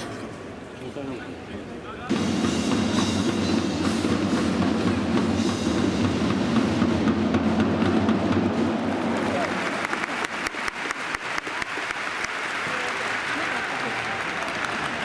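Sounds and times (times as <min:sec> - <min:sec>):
stadium crowd noise: 0:00.0 - 0:15.0
drums beating: 0:02.1 - 0:11.6.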